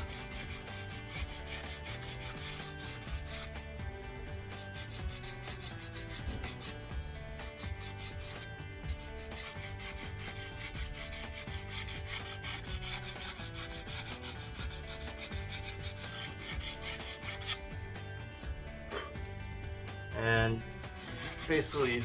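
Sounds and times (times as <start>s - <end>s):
sandpaper rubbing on metal rim: 0.0s - 18.0s, 20.6s - 22.0s.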